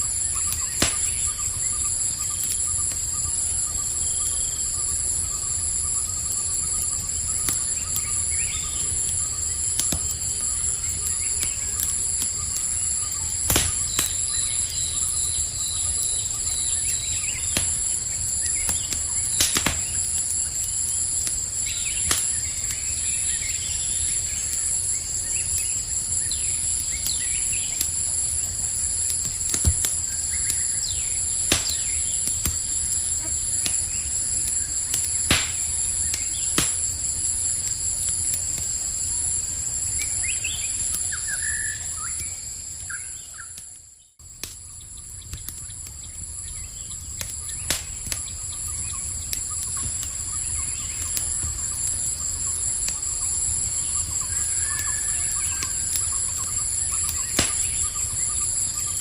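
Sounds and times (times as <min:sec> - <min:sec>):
campfire crackling and popping: 0:00.0 - 0:59.0
night insects chorus: 0:00.0 - 0:59.0
bird chirps: 0:53.0 - 0:59.0.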